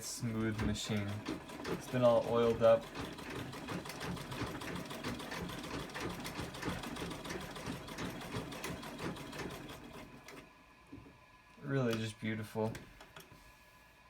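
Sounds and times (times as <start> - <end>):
sewing machine stitching: 0.4 - 10.4.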